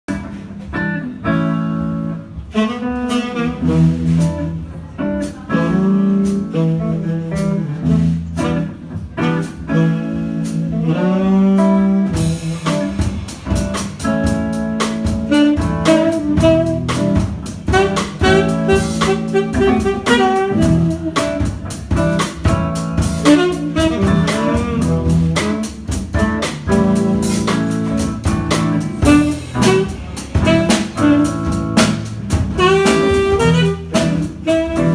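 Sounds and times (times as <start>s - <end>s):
jazz guitar: 0.1s - 34.9s
saxophone melody: 0.8s - 34.9s.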